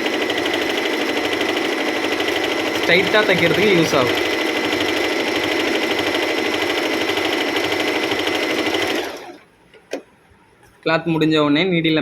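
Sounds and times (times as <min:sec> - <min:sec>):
sewing machine stitching: 0:00.0 - 0:09.5.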